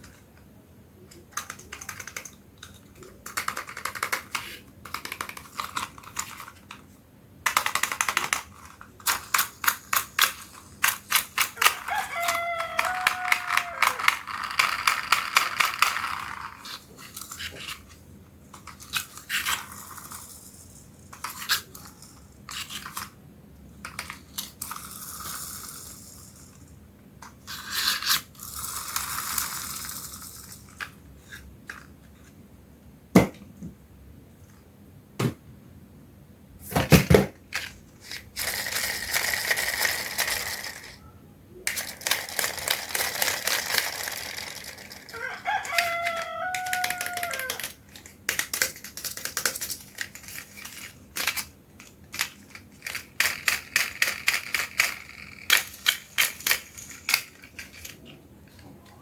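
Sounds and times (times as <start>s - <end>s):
plastic toys clicking: 0.0s - 6.8s, 7.4s - 23.2s, 23.8s - 32.0s, 37.1s - 41.0s, 41.6s - 59.0s.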